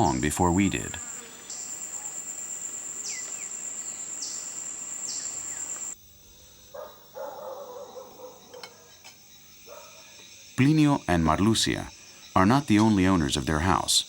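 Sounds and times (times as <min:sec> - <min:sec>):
falling whistle-like calls: 0:00.0 - 0:06.0
short wavering calls: 0:00.0 - 0:06.0
insects trilling: 0:00.0 - 0:14.0.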